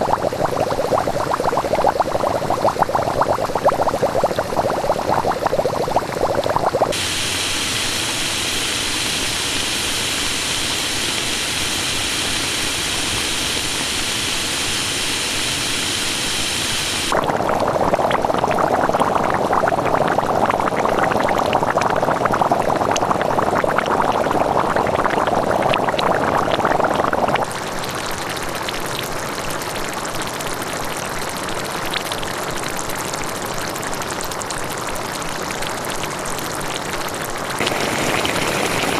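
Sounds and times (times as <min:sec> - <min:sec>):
hot spring bubbling and popping: 0:00.0 - 0:38.9
hot spring hissing: 0:04.9 - 0:17.9, 0:36.4 - 0:38.9.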